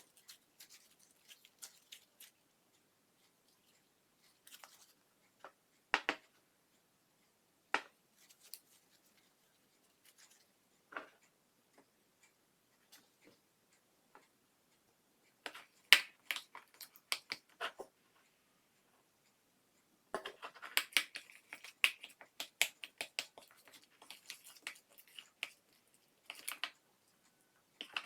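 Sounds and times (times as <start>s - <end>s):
slime clicking and popping: 20.6s - 25.6s.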